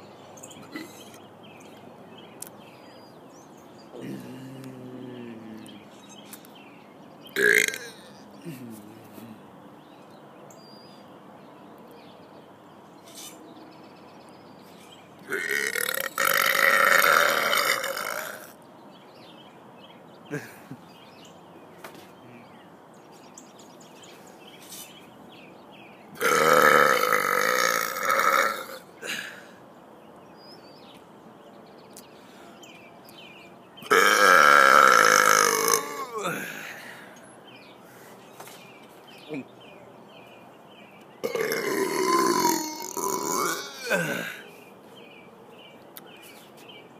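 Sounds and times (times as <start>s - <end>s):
man belching loudly: 4.0s - 5.8s, 7.4s - 8.8s, 15.3s - 18.6s, 26.2s - 29.3s, 33.8s - 36.7s, 41.2s - 44.4s.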